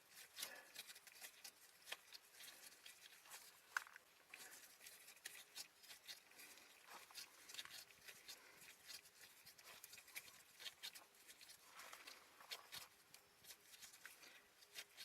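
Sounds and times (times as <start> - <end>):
faint clicks and rustles: 0.0 - 15.0.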